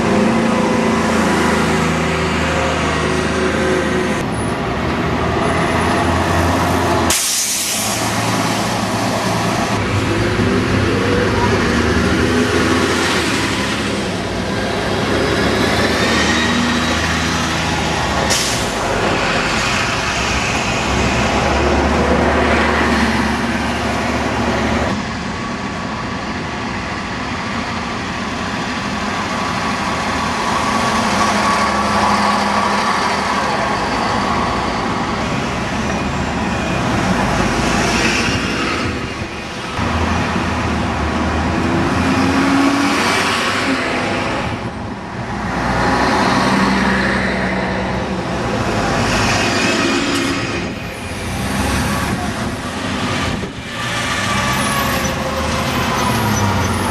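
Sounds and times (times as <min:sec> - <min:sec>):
diesel bus engines pulling away: 0:00.0 - 0:56.9
street traffic: 0:00.0 - 0:56.9
air brake hiss: 0:07.1 - 0:08.2, 0:18.3 - 0:18.8.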